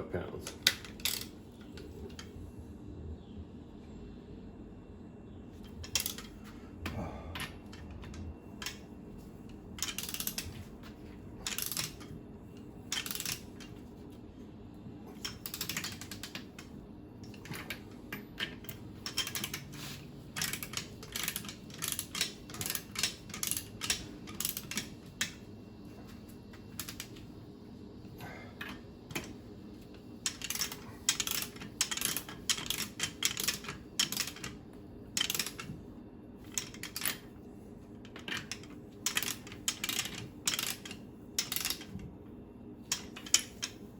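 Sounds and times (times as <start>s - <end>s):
ratcheting torque wrench clicking: 9.8s - 10.5s, 11.4s - 12.1s, 12.9s - 13.4s, 15.2s - 16.7s, 18.7s - 25.4s, 30.3s - 34.6s, 38.1s - 41.9s.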